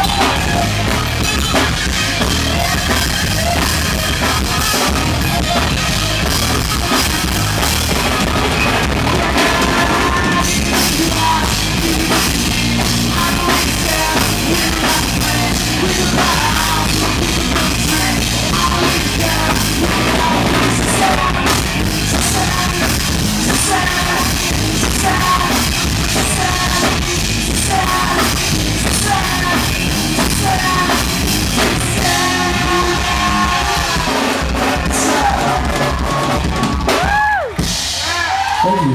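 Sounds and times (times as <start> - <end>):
rock music with drums: 0.0 - 38.9
person singing: 8.8 - 37.5.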